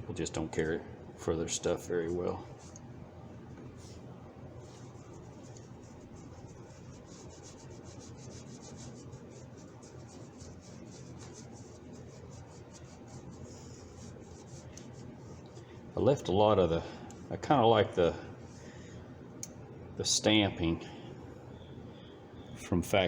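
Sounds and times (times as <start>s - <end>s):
rubbing on metal hand tool: 4.8s - 15.5s.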